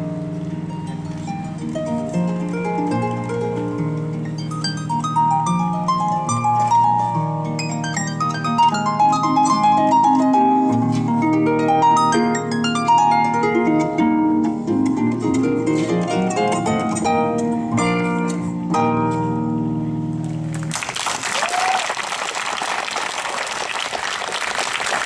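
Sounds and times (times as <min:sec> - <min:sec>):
harp playing a waltz: 0:00.0 - 0:20.5.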